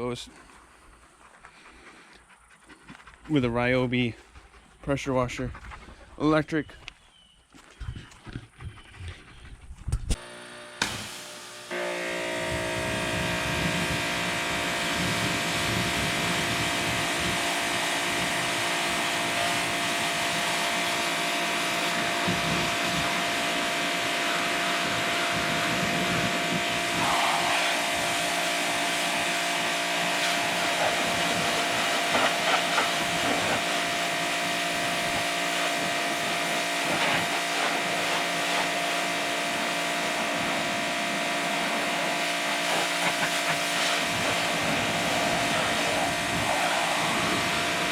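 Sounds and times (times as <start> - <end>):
pressure washer motor whine: 10.1 - 47.9
water jet hissing: 13.6 - 47.9.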